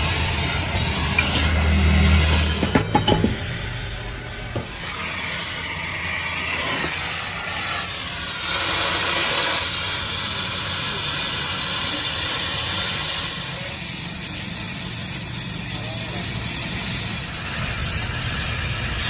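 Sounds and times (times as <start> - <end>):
low hum: 0.0 - 4.6
loud steady hiss: 0.0 - 19.0.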